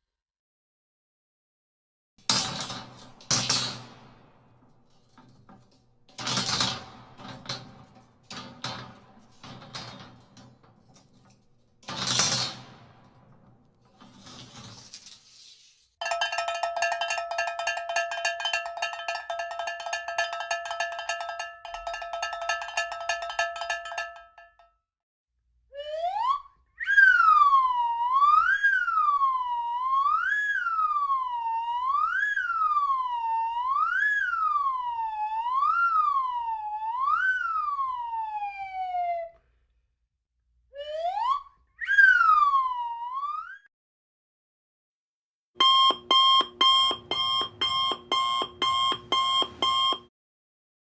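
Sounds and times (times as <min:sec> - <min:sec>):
rapidly pulsing ringing tone: 0:16.0 - 0:24.6
siren whoops: 0:25.7 - 0:39.4, 0:40.8 - 0:43.7
siren wailing: 0:25.8 - 0:39.4, 0:40.8 - 0:43.6.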